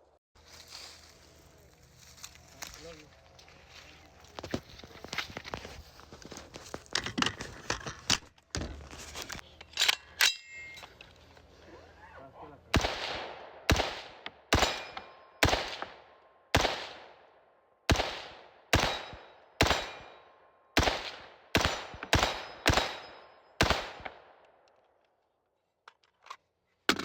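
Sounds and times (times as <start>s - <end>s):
gunshots with echo: 12.7s - 17.2s, 17.9s - 24.3s.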